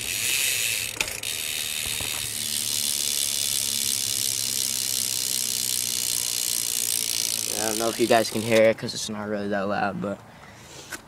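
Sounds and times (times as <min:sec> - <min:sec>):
bicycle hub clicking buzz: 0:00.0 - 0:08.7.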